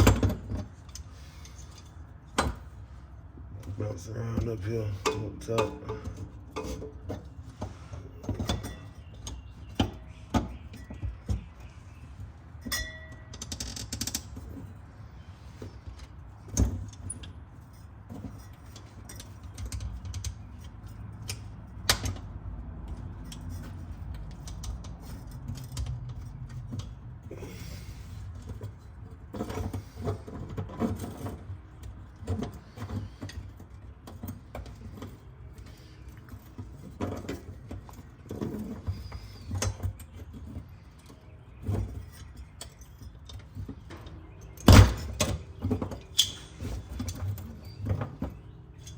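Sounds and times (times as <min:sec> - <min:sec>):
hand tools clinking on metal: 0:03.6 - 0:07.3, 0:12.6 - 0:14.7.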